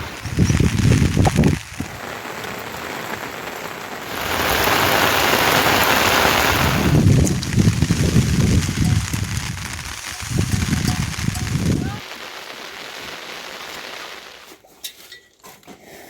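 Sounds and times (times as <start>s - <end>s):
low rumbles: 0.0s - 12.0s
heavy rain: 0.0s - 14.6s.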